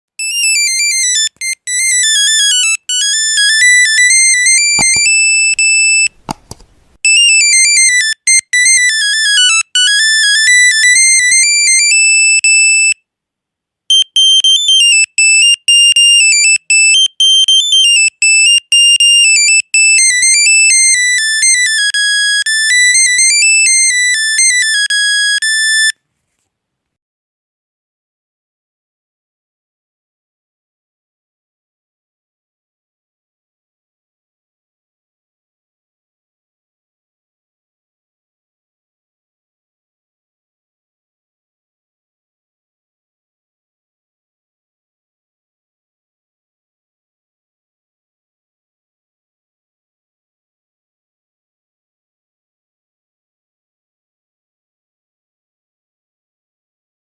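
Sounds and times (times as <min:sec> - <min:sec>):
monophonic phone ringtone: 0:00.2 - 0:06.2, 0:07.0 - 0:13.0, 0:13.9 - 0:26.0.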